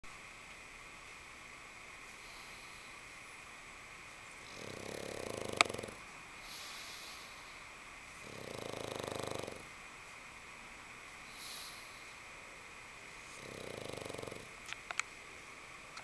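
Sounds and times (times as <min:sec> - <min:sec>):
soft breath: 0:02.0 - 0:03.5, 0:06.4 - 0:07.8, 0:11.2 - 0:12.4
dog snoring: 0:04.4 - 0:07.5, 0:08.2 - 0:09.7, 0:11.3 - 0:12.2, 0:13.2 - 0:14.5.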